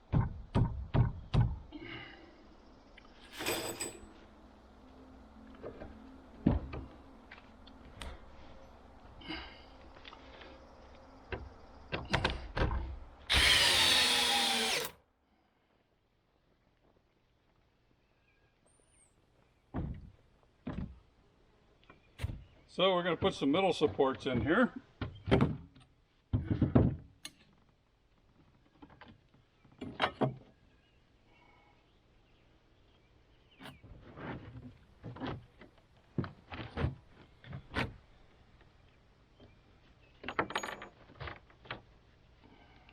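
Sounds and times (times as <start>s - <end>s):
power drill running: 13.3s - 15.0s.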